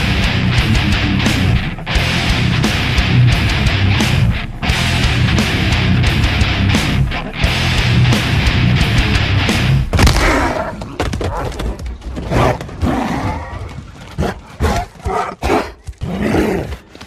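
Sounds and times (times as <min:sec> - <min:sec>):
thumps: 0:09.8 - 0:13.0.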